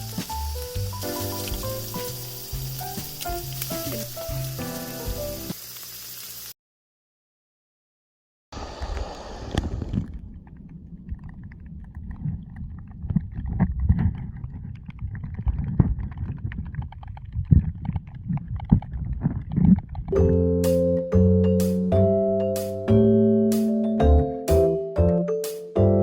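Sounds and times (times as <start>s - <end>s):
music: 0.0s - 5.6s, 20.1s - 26.0s
muffled water sloshing: 8.8s - 20.2s
low rumble: 8.9s - 20.4s.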